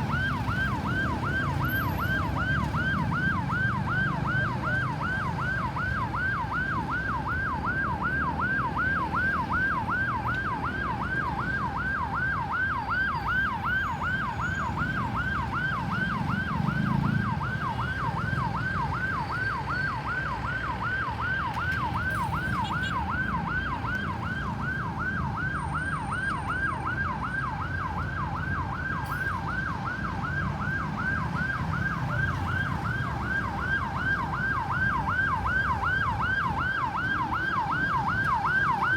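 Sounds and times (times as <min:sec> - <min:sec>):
ambulance siren yelping: 0:00.0 - 0:38.9
low road rumble: 0:00.0 - 0:38.9.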